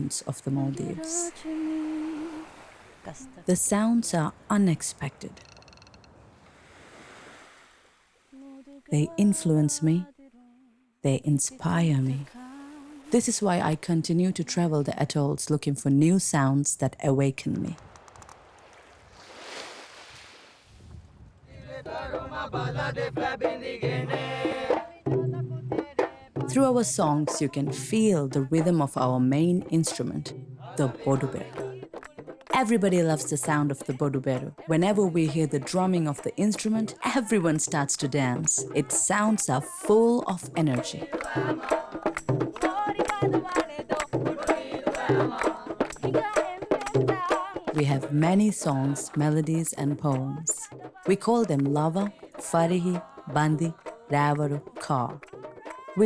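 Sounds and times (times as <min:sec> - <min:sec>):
voices singing a chant: 0:00.0 - 0:05.4, 0:21.5 - 0:26.0, 0:29.7 - 0:56.0
soft noise wash: 0:00.0 - 0:15.5
drums in fast rhythm: 0:22.9 - 0:30.1, 0:30.9 - 0:56.0.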